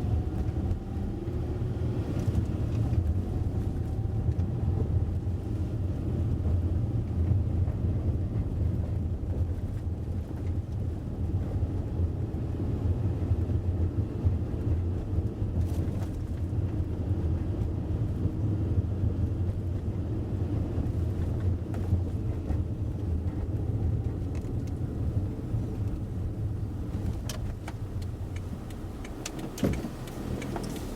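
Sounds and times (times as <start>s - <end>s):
car road and engine rumble: 0.0s - 30.9s.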